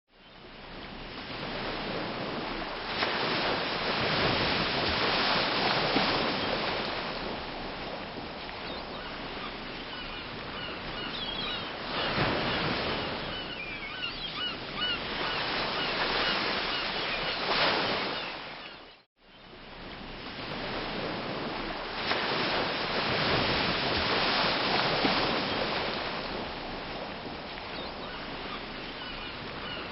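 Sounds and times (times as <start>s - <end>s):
sea waves washing: 0.5s - 18.8s, 19.7s - 29.9s
seagulls calling: 8.6s - 19.0s, 27.7s - 29.9s.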